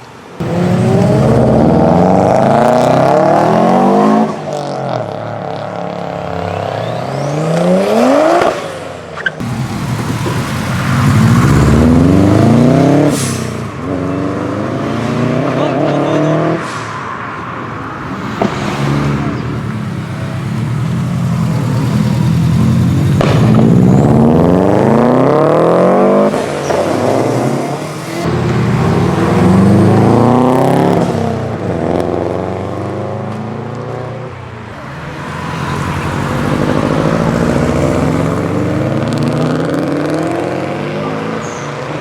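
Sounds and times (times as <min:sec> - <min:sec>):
car engine accelerating: 0:00.4 - 0:16.6, 0:18.5 - 0:34.2.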